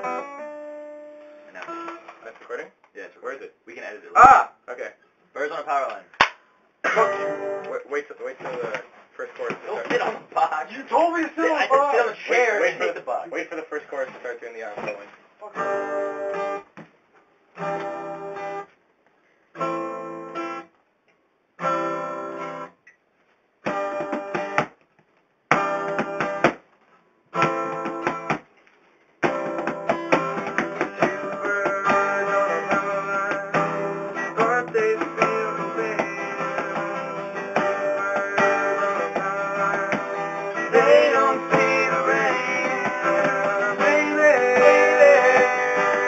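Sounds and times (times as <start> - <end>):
acoustic guitar strumming: 0.0 - 2.3, 6.8 - 8.9, 14.9 - 16.8, 17.5 - 18.7, 19.6 - 20.7, 21.6 - 22.8, 23.6 - 24.8, 25.5 - 26.6, 27.3 - 28.4, 29.2 - 46.0.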